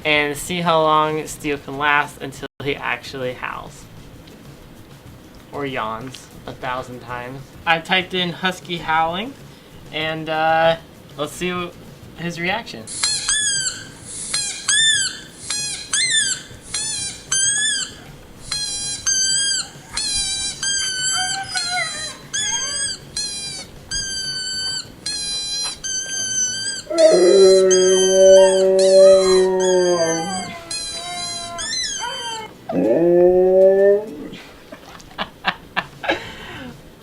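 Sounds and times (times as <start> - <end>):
high husky howls from video: 20.8 - 22.9, 26.4 - 34.4
dog long deep howl: 26.9 - 34.4.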